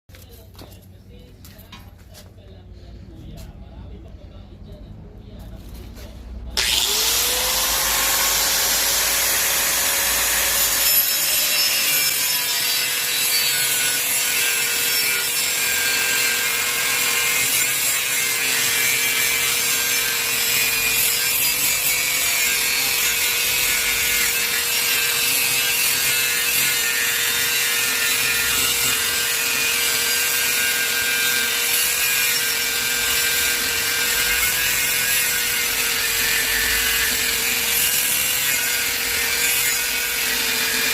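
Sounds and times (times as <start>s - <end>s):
angle grinder motor whine: 6.6s - 13.8s
grinding disc cutting: 6.6s - 40.9s.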